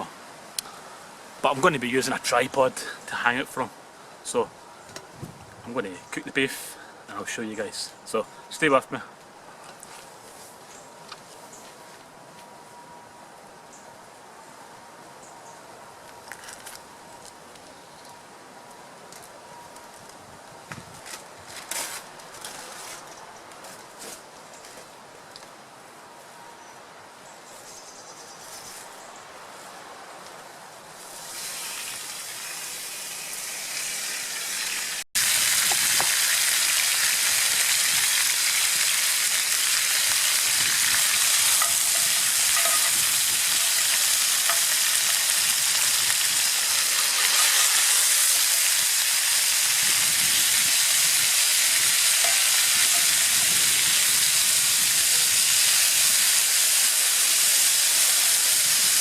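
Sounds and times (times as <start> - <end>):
beef sizzling in a skillet: 31.1 - 59.0.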